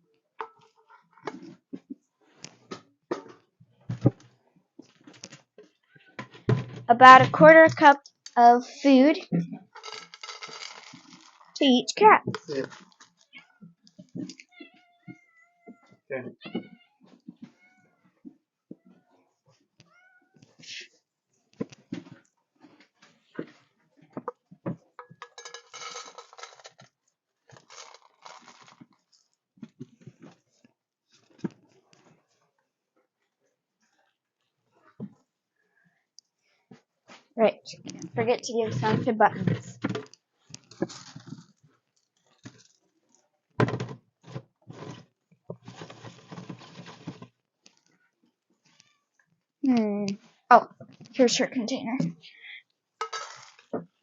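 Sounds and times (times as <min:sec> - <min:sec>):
sharp knocks and clatters: 0:06.2 - 0:08.0, 0:24.1 - 0:26.8
dry kibble rattling into bowls: 0:09.7 - 0:11.7, 0:12.3 - 0:13.3, 0:25.0 - 0:26.9, 0:27.5 - 0:29.2, 0:38.1 - 0:41.6, 0:43.7 - 0:47.3, 0:53.0 - 0:53.7
rustling scrape: 0:40.7 - 0:41.5, 0:44.2 - 0:45.0, 0:45.6 - 0:47.3.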